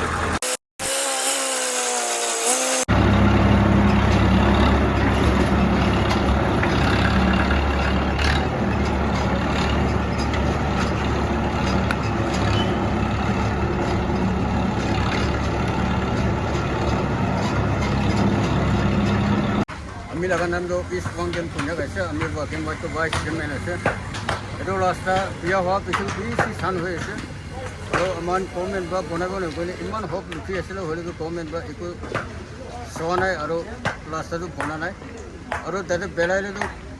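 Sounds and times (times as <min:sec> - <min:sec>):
heavy vehicle engine humming: 0:00.0 - 0:00.4, 0:02.8 - 0:31.6.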